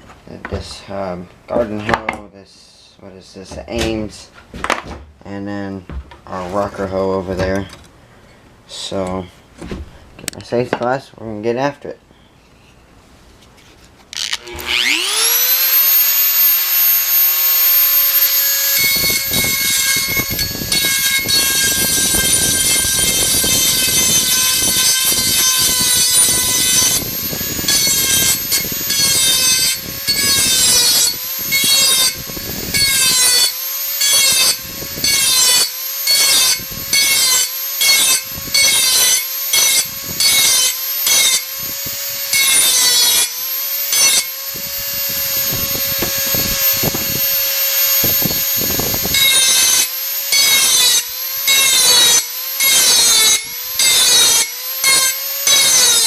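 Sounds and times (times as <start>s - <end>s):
rotary tool whining: 14.1s - 56.0s
grinding on metal: 14.2s - 56.0s.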